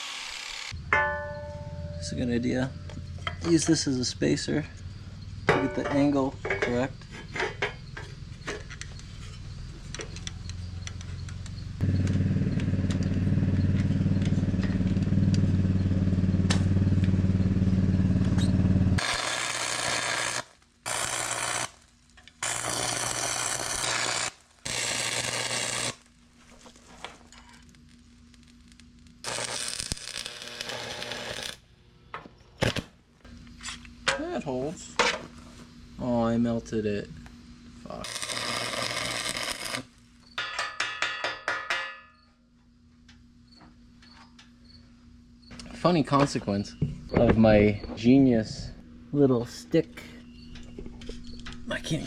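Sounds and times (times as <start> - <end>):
crackling welding arc: 0.0 - 0.8, 19.0 - 31.7, 32.6 - 33.0, 37.8 - 40.2
welder low hum: 0.0 - 4.9, 8.0 - 33.9, 35.6 - 40.4.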